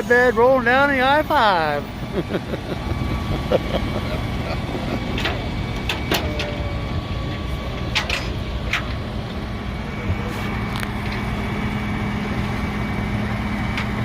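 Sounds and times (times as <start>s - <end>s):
vehicle engine idling: 0.0s - 14.0s.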